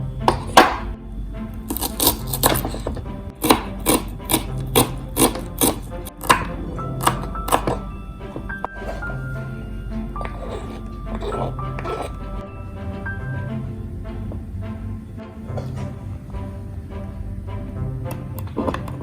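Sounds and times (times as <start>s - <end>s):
background music: 0.0s - 19.0s
knife chopping on cutting board: 0.3s - 0.9s, 1.7s - 7.8s.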